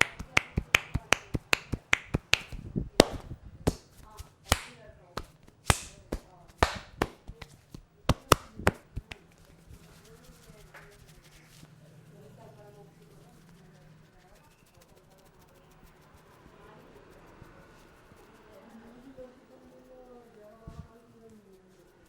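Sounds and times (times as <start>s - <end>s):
hands slapping head and hair: 0.0s - 9.3s.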